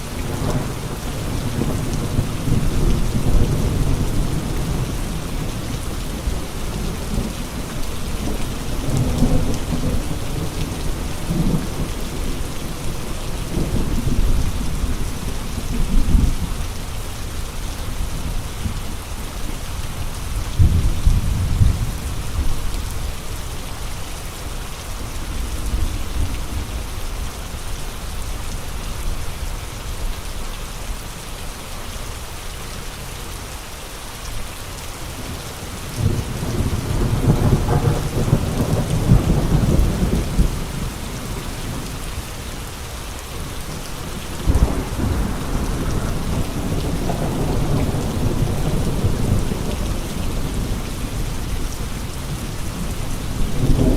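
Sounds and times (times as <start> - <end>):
steady rain falling: 0.0 - 53.9
rumbling wind gusts: 35.1 - 53.9.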